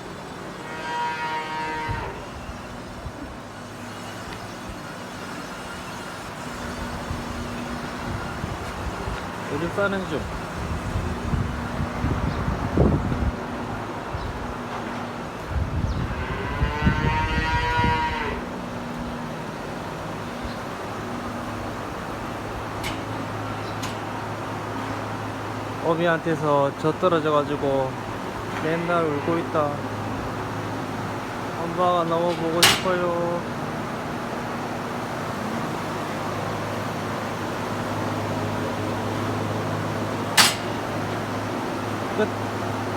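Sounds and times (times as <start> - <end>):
electric fan motor hum: 0.0 - 42.9
sharp clack: 32.3 - 33.1, 40.4 - 41.1.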